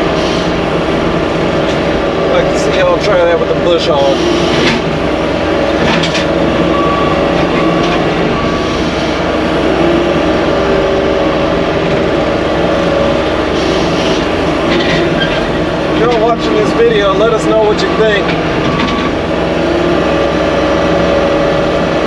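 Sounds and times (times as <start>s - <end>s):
skid steer cutter droning: 0.0s - 22.0s.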